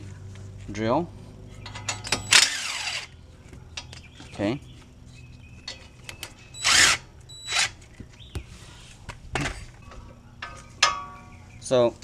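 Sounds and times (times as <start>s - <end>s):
power drill spinning bolts: 1.7s - 3.1s, 6.2s - 7.8s.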